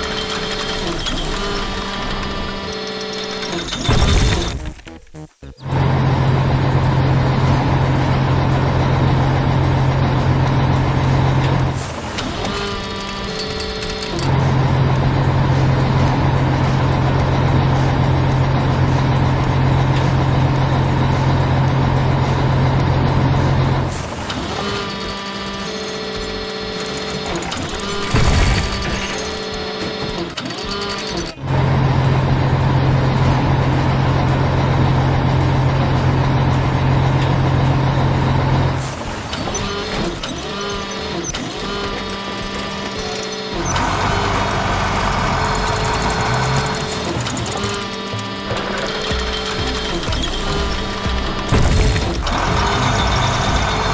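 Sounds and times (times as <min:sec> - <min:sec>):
heavy vehicle engine running: 0:00.0 - 0:53.9
warbling tones: 0:45.1 - 0:53.9.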